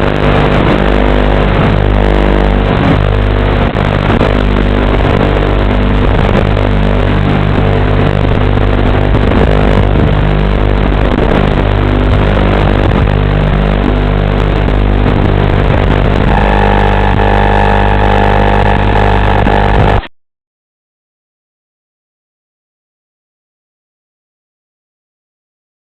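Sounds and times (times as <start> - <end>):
drone motors buzzing: 0.0 - 20.1
high steady tone: 7.6 - 20.1.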